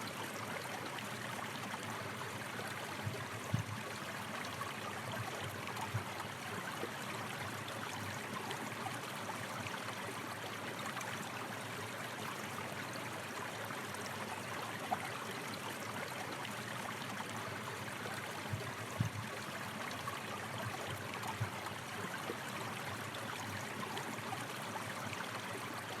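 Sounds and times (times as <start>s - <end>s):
stream rushing and babbling: 0.0s - 26.0s
faint low water thumps: 3.0s - 4.0s, 5.2s - 6.2s, 18.4s - 19.4s.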